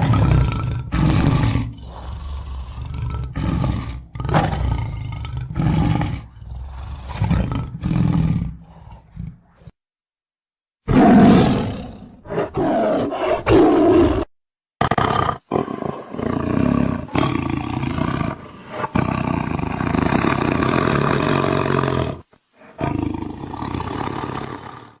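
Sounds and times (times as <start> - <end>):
tiger roaring: 0.0 - 9.7, 10.9 - 25.0.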